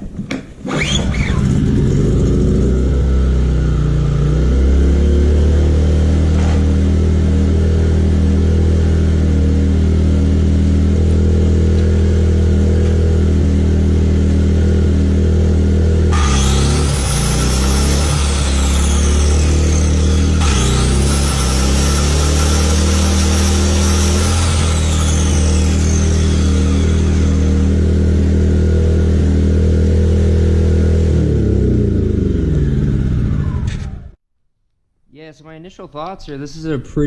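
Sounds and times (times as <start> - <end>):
generator engine running: 6.1 - 34.1
electric saw whining: 10.9 - 34.2.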